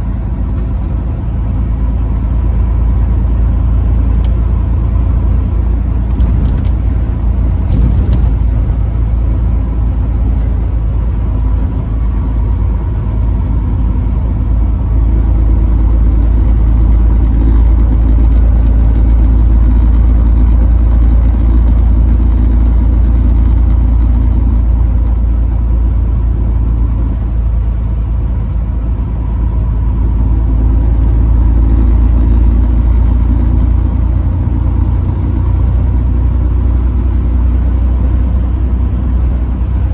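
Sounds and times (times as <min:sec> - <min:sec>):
truck engine rumbling: 0:00.0 - 0:39.9.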